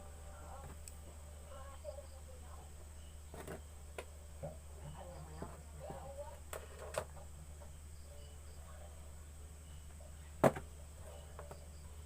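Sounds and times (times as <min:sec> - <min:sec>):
low hum: 0:00.0 - 0:06.5.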